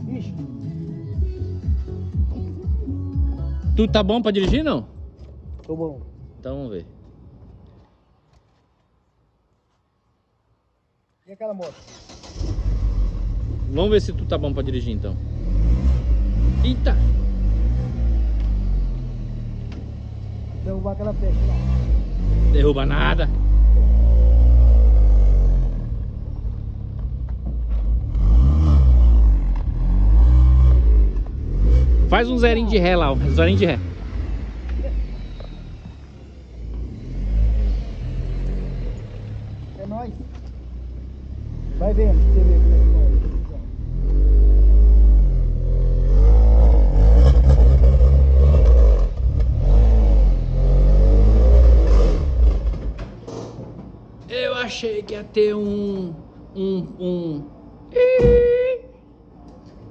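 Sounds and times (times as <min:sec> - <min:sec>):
car engine revving: 0:11.7 - 0:53.0.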